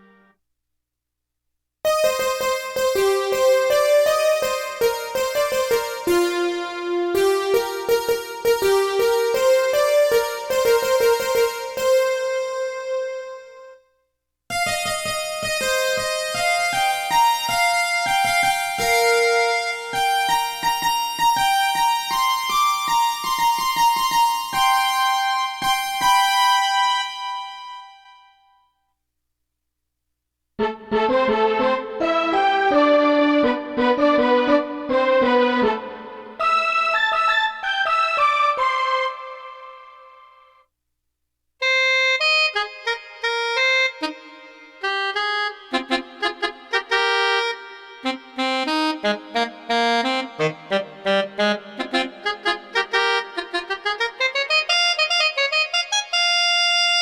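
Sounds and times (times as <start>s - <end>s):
synthesizer melody: 30.6s - 40.5s.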